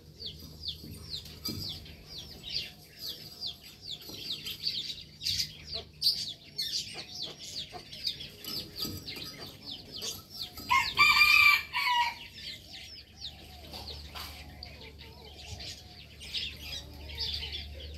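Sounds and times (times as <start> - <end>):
rooster crowing: 10.7 - 12.3.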